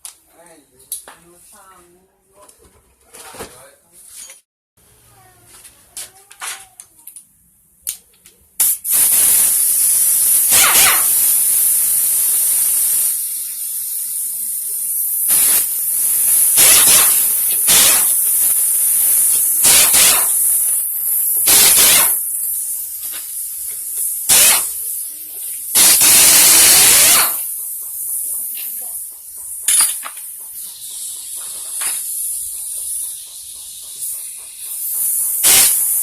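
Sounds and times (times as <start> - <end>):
pressurised spray hissing: 8.6 - 36.0.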